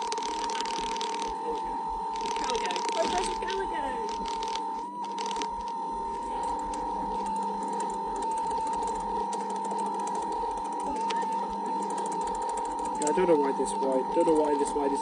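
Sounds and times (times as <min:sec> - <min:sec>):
electric motor whine: 0:00.0 - 0:15.0
faint rapid ticking: 0:06.5 - 0:14.7.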